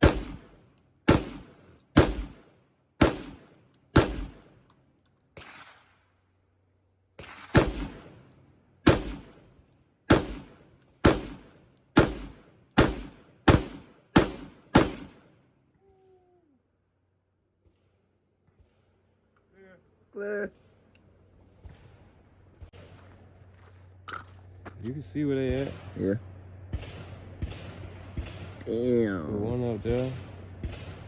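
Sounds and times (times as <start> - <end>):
gunshots with echo: 0.0 - 4.6, 7.2 - 9.4, 10.1 - 15.3, 25.4 - 31.0.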